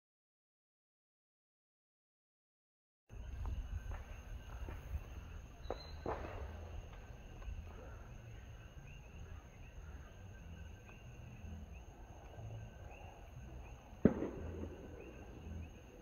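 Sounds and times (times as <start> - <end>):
insects chirping: 3.1 - 16.0
low background rumble: 3.1 - 16.0
firework bang: 5.6 - 7.0, 14.0 - 16.0
sharp firework crack: 5.6 - 7.2, 13.9 - 16.0.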